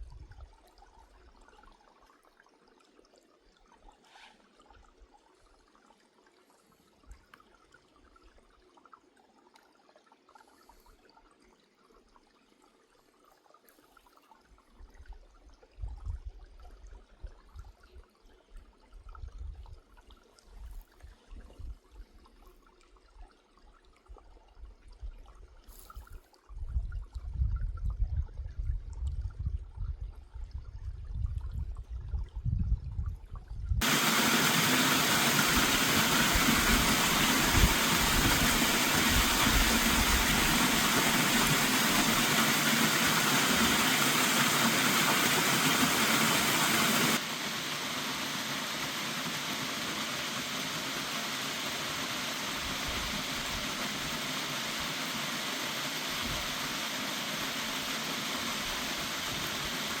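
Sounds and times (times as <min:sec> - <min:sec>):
waterfall rushing: 0:33.8 - 1:00.0.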